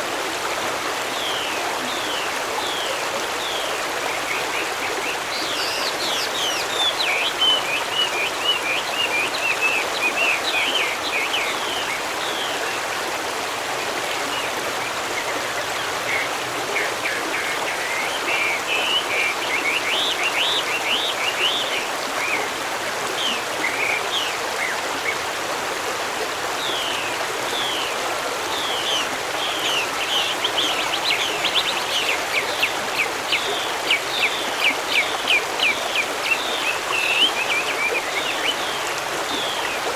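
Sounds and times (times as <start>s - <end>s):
stream running: 0.0s - 39.9s
birds chirping: 1.2s - 12.6s, 26.6s - 39.8s.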